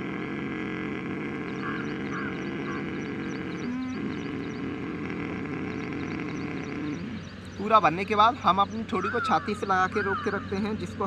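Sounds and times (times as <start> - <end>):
throaty rasping breathing: 0.0 - 7.6.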